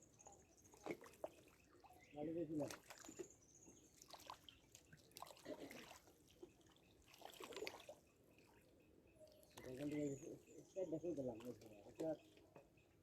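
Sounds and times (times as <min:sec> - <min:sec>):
water trickling and dripping: 0:00.2 - 0:12.7
small water splashes: 0:00.6 - 0:12.5.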